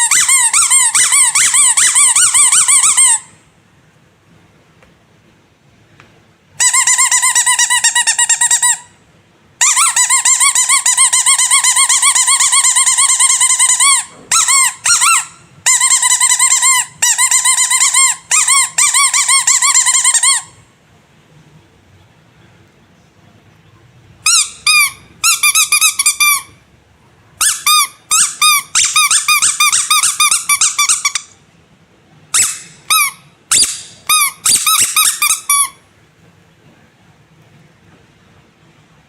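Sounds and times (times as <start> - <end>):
rubber squeaky toys squeaking: 0.0 - 3.3, 6.6 - 8.9, 9.6 - 20.6, 24.2 - 26.6, 27.4 - 31.4, 32.3 - 35.8.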